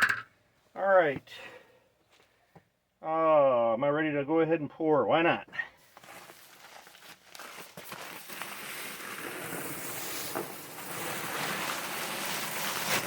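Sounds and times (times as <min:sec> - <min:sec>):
dry concrete mix pouring: 0:05.8 - 0:13.0.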